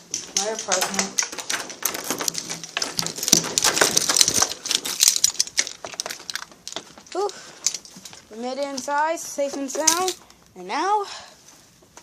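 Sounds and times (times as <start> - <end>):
scraping: 0.0 - 10.2
clattering and rustling: 0.0 - 10.4.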